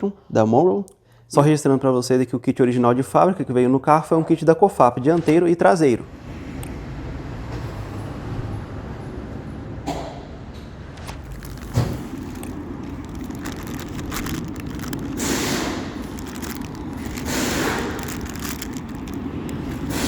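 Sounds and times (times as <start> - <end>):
rustling and scraping of parts: 11.0 - 20.0.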